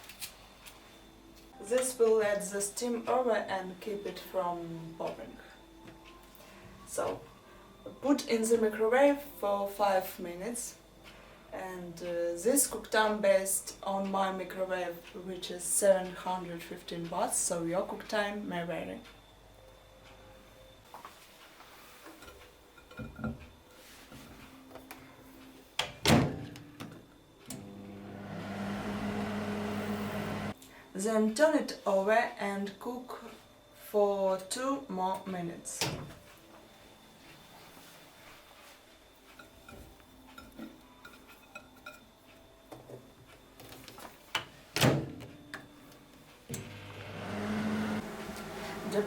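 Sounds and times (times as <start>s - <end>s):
microwave oven humming: 24.5s - 30.6s, 44.2s - 49.0s.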